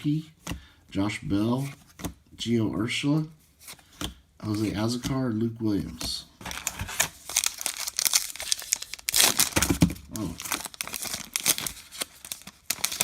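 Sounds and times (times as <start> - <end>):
wrapper tearing and crinkling: 6.5 - 13.0.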